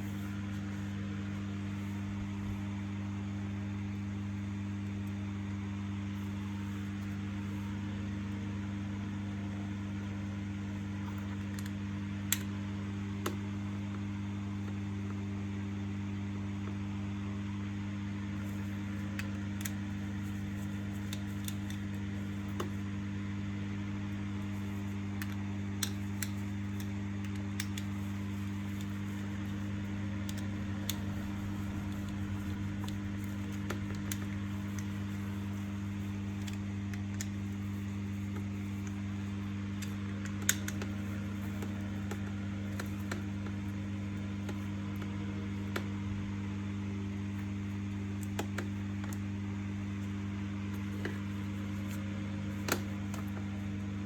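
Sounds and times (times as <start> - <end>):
low electrical hum: 0.0 - 54.0
light clicks and taps: 18.4 - 22.9, 24.4 - 46.0, 50.7 - 53.6.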